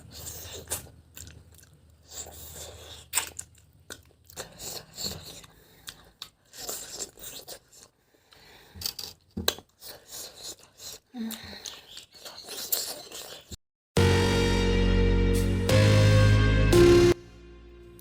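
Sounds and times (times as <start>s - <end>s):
person chewing and crunching: 0.0s - 13.6s
biting and smacking clicks: 0.2s - 13.6s.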